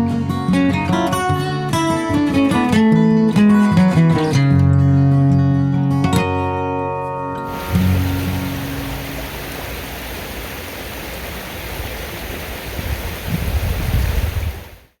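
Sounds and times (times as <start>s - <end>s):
creek water rushing: 7.5s - 15.0s
low rumbles on microphone: 11.1s - 14.9s.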